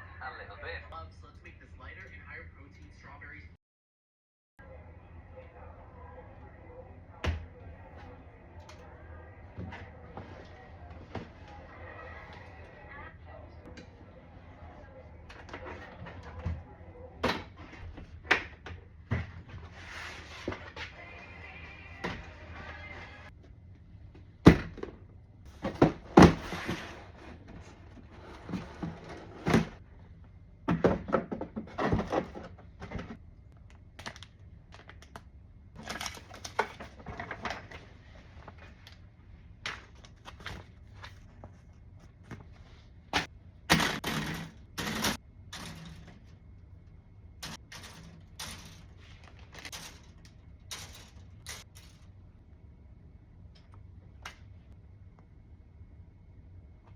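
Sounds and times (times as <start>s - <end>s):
knocks and thunks on plastic: 30.6s - 33.2s.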